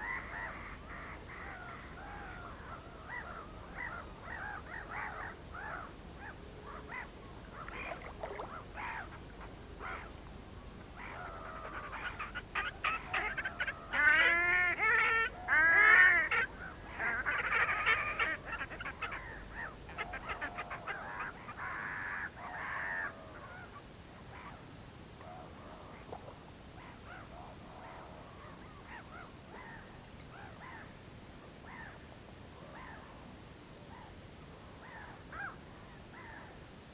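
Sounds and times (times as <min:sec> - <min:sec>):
other birds calling: 0:00.0 - 0:10.2, 0:10.9 - 0:24.6.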